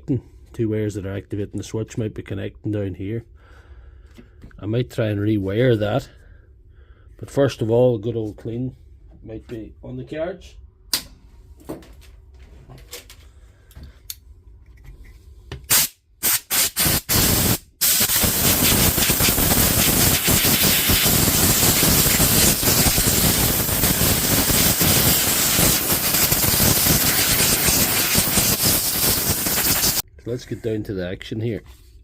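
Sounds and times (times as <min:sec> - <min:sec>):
pressurised spray hissing: 0:15.7 - 0:30.0.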